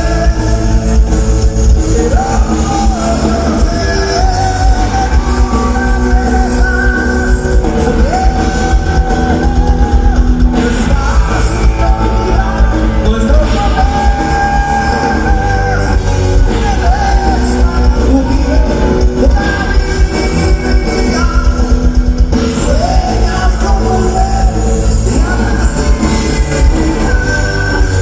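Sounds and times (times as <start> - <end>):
heavy bass: 0.0 - 28.0
live rock band playing: 0.0 - 28.0.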